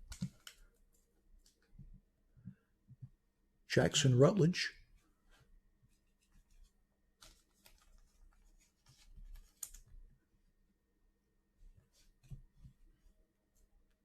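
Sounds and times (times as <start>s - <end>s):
trading cards being handled: 6.0s - 9.9s.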